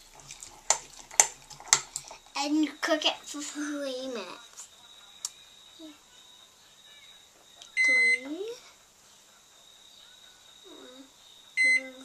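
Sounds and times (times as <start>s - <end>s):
microwave keypad beeping: 7.7s - 8.3s, 11.6s - 12.0s.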